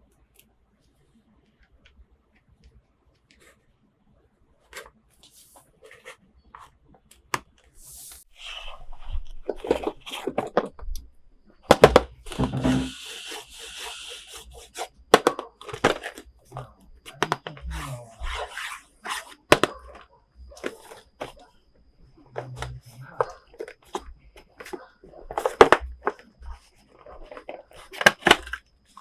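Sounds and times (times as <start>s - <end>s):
plastic packaging clicks and crinkles: 22.4s - 29.0s.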